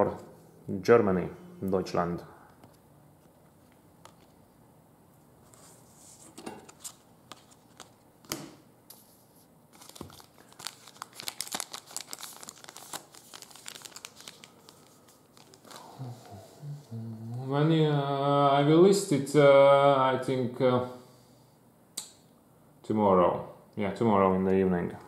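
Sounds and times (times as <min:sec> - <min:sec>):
plastic wrapper crinkling: 0:09.7 - 0:15.9.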